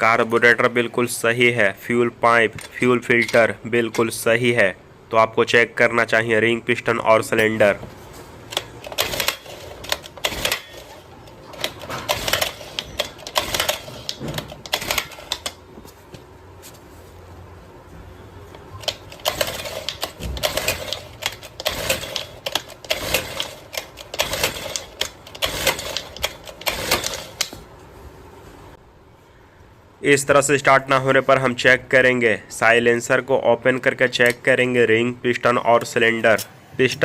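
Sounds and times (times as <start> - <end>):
recoil starter pulls clicking: 8.5 - 10.9, 11.5 - 15.6, 18.8 - 27.6
engine turning over: 8.6 - 10.9, 11.5 - 15.6, 18.8 - 27.5.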